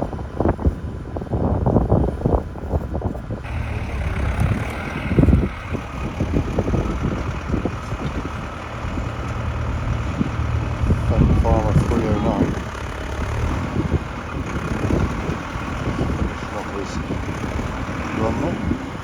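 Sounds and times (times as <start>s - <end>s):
tractor engine running: 0.0s - 19.0s.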